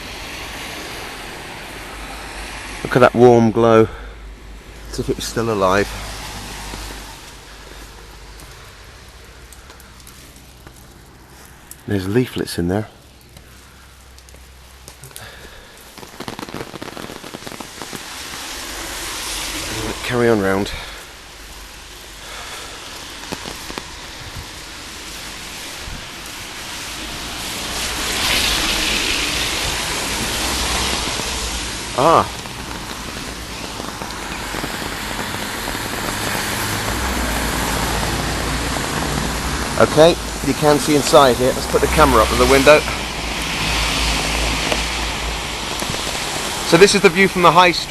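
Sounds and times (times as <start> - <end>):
rain pattering: 0.0 - 47.9
tyre hiss on wet road: 0.0 - 47.9.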